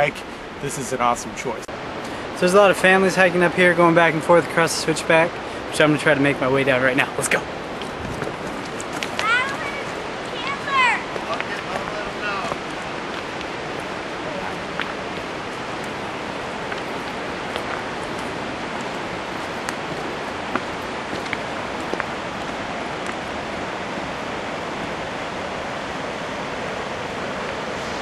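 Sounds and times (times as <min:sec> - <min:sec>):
waterfall rushing: 0:00.0 - 0:28.0
footsteps on trail: 0:07.6 - 0:23.7.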